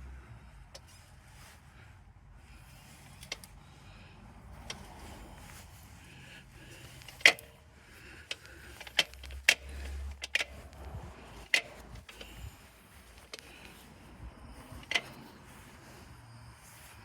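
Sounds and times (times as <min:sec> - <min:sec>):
sharp clicks and knocks: 0:06.9 - 0:07.5, 0:08.3 - 0:13.6, 0:14.8 - 0:15.2.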